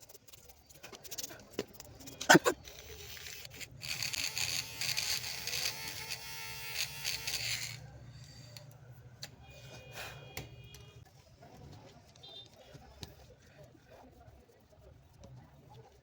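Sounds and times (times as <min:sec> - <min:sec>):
small electric tool buzzing: 0:02.4 - 0:07.8.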